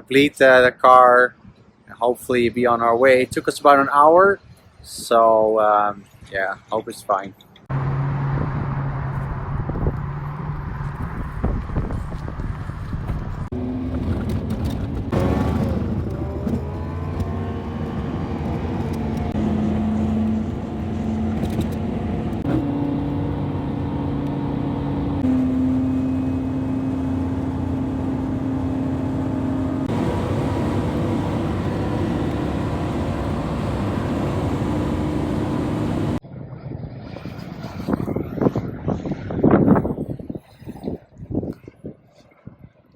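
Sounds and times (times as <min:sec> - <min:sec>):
car engine drone: 0:07.6 - 0:36.2.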